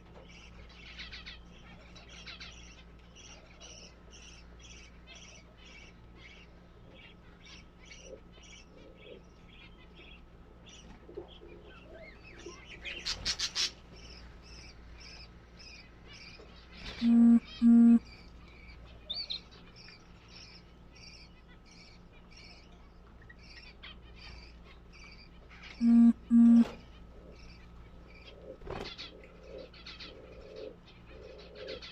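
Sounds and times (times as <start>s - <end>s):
small birds chirping: 0.0s - 31.9s
short loud low-pitched beeps: 17.0s - 18.0s, 25.8s - 26.8s.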